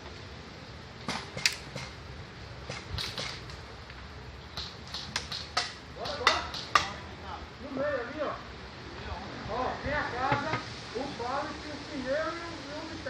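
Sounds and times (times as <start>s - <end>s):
airsoft gun shots: 1.4s - 1.7s.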